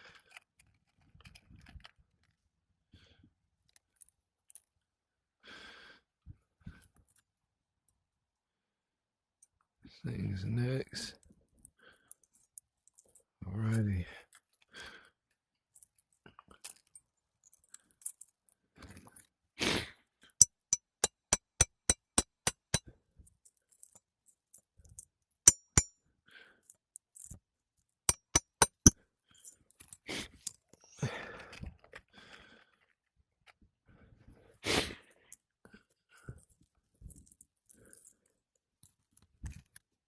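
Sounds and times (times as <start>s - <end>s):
hammer tapping nails: 20.4s - 22.8s, 25.5s - 25.9s, 28.1s - 29.0s.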